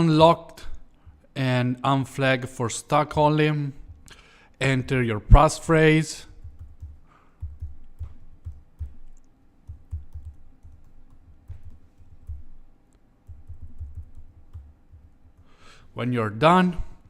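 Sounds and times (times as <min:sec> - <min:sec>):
keyboard typing: 0:06.3 - 0:15.5.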